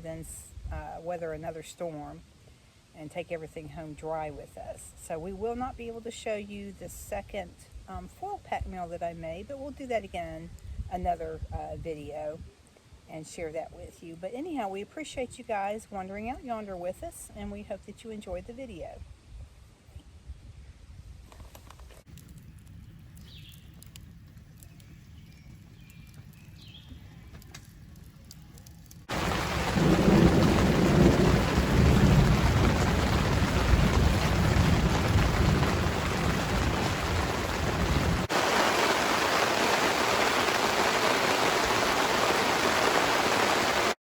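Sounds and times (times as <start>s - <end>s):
thunder rumble: 29.0s - 43.9s
heavy rain: 29.0s - 44.0s.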